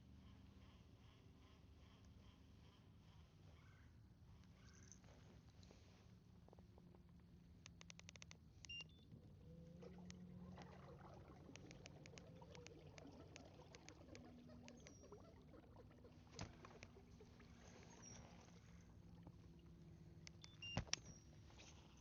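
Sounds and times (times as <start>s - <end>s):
light clicks: 7.2s - 8.8s, 20.2s - 21.8s.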